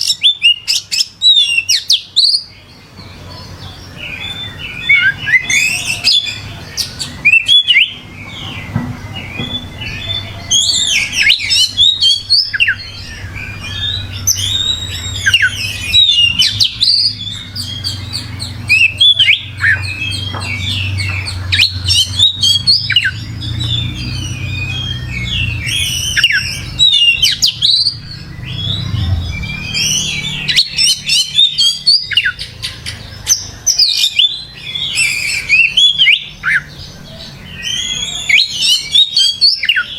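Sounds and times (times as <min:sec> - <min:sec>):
bird singing whistles and chirps: 0:00.0 - 0:39.9
low hum: 0:07.9 - 0:30.6.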